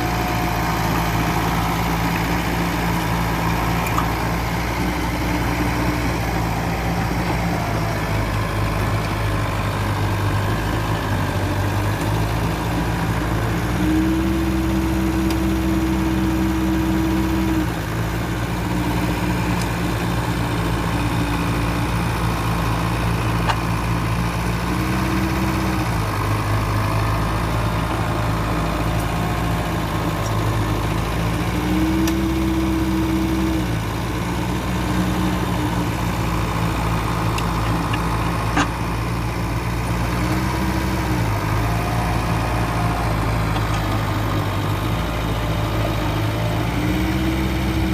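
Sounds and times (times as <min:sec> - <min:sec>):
bulldozer diesel engine working: 0:00.0 - 0:47.9.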